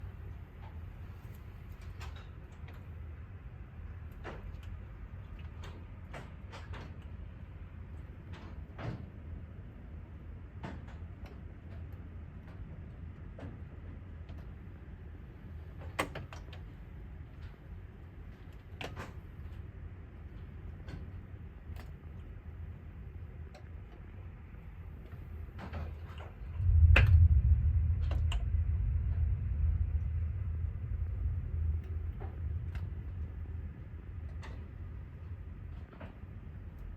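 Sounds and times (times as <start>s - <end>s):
storm background noise: 0.0s - 36.9s
low thunder rumble: 25.2s - 36.9s.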